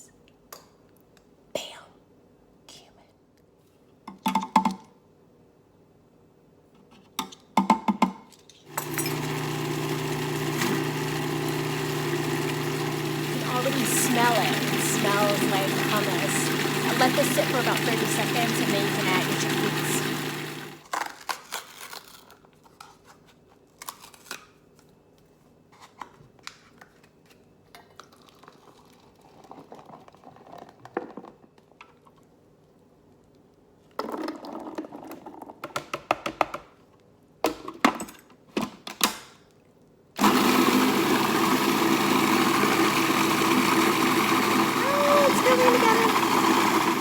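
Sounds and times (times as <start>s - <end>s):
food processor motor running: 8.7s - 20.9s, 40.2s - 47.0s.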